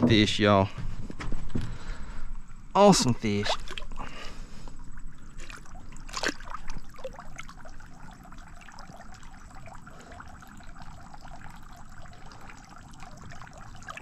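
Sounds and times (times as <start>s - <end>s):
water trickling and splashing: 2.9s - 14.0s.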